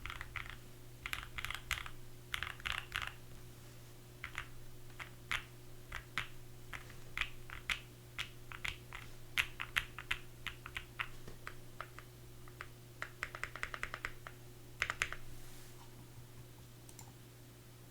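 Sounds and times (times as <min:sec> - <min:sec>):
typing on mechanical keyboard: 0:00.0 - 0:03.2, 0:04.2 - 0:15.2.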